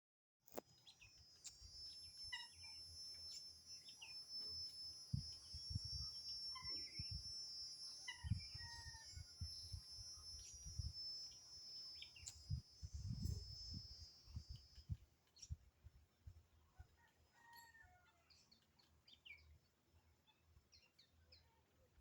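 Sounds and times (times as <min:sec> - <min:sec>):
cicadas droning: 0:00.8 - 0:15.0.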